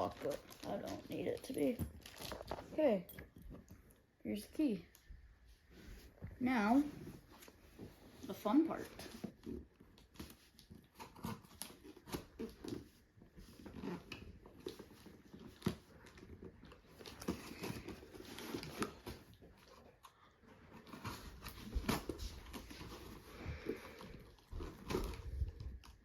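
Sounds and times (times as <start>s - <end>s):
knife cutting cardboard box: 10.9s - 12.9s.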